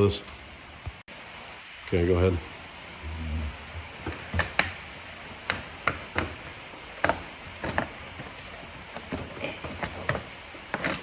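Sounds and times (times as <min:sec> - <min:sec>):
hand tools clicking and knocking: 0:03.8 - 0:11.0.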